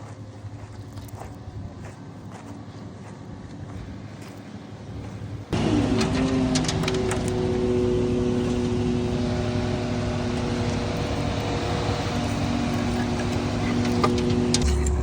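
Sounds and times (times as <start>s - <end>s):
motor running with steady hum: 5.6s - 15.0s.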